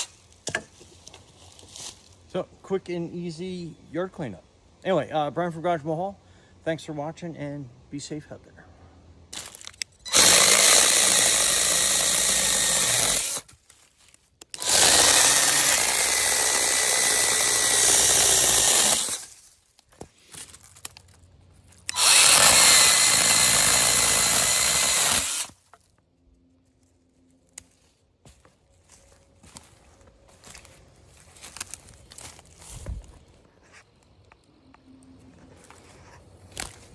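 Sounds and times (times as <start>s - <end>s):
electric mini chainsaw whine: 9.4s - 13.4s, 14.6s - 19.3s, 21.9s - 25.6s.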